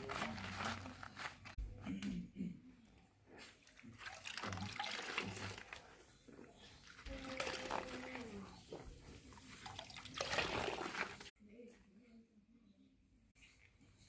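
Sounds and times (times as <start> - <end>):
wet sponge squelching: 3.6 - 11.3.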